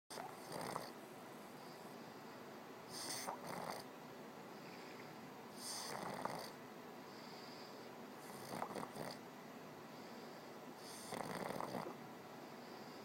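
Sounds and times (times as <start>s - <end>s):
person snoring: 10.9s - 11.9s.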